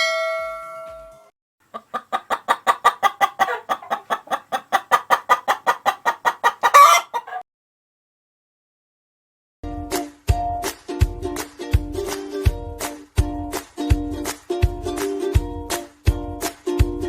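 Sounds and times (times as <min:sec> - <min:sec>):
hen clucking and squawking: 0:01.7 - 0:07.4.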